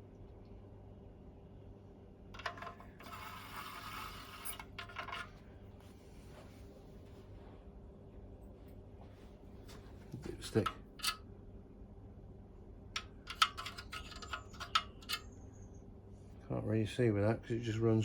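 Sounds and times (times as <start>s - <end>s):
small clicks against metal: 10.2s - 11.2s, 13.0s - 15.4s.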